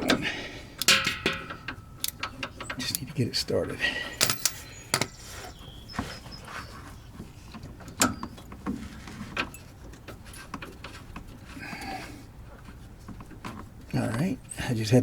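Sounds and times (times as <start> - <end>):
metallic clicks of hand tools: 0.8 - 3.1, 4.2 - 5.2.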